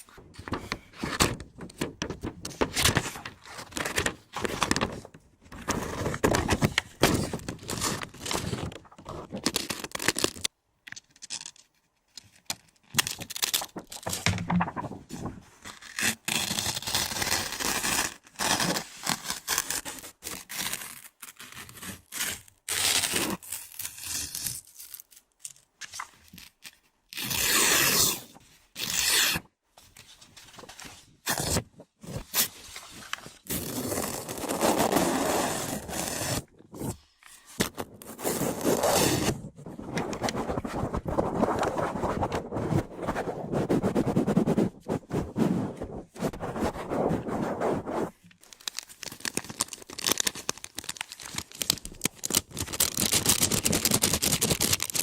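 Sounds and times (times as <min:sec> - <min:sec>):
scraping against microphone: 0:38.2 - 0:48.2.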